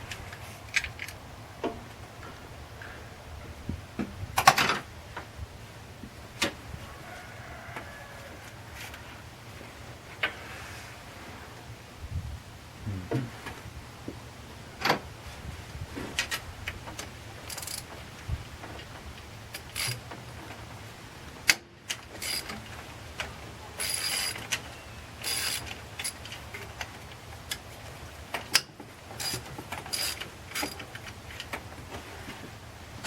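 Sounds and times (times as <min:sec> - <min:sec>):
ratchet wrench clicking: 0:17.5 - 0:17.8, 0:25.2 - 0:26.2, 0:29.2 - 0:30.8.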